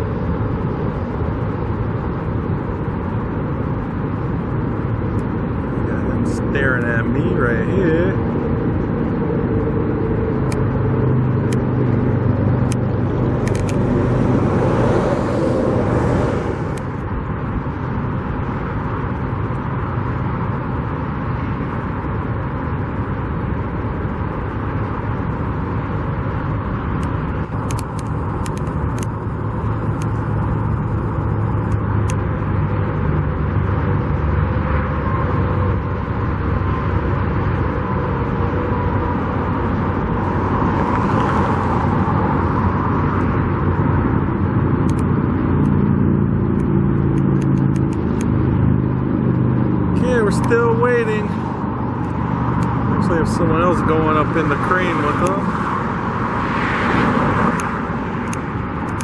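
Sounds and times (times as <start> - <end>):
traffic and engine rumble: 0.0 - 59.0
vehicle passing: 5.8 - 17.1, 27.3 - 59.0.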